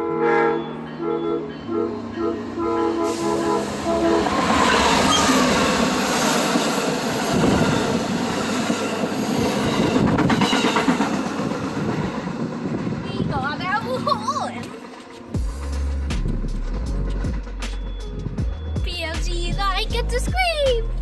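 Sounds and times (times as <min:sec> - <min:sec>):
train wheels rushing on rails: 0:00.7 - 0:18.8
background music: 0:13.3 - 0:21.0.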